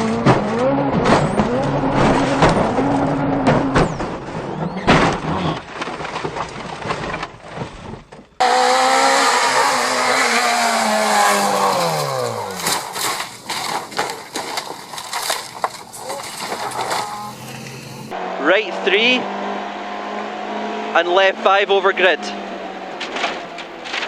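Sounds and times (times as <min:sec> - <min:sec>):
rally car engine revs falling: 0:00.0 - 0:05.7, 0:08.4 - 0:14.0, 0:16.2 - 0:24.0
rough noise with knocks and clatter: 0:00.0 - 0:18.1, 0:22.9 - 0:24.0.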